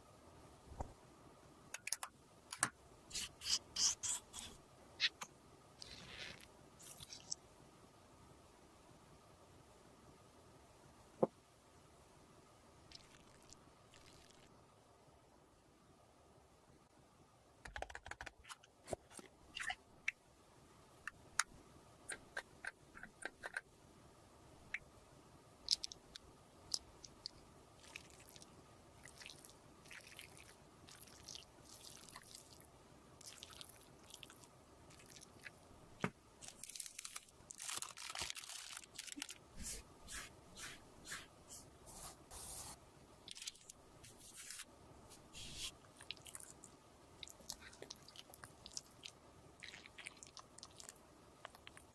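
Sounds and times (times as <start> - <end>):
soft scraping and squishing strokes: 36.4 - 51.9.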